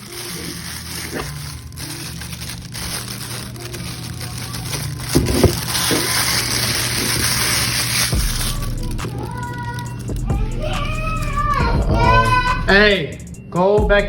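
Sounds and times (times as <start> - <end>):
plastic and paper crinkling: 0.0 - 11.2.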